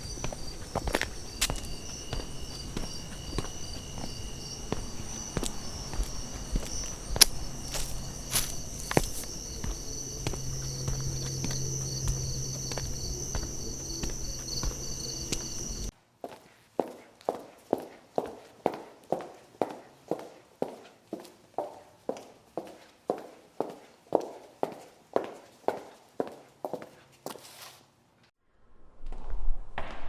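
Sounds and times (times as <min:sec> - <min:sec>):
night insects chirping: 0:00.0 - 0:15.9
footsteps walking: 0:00.0 - 0:18.4.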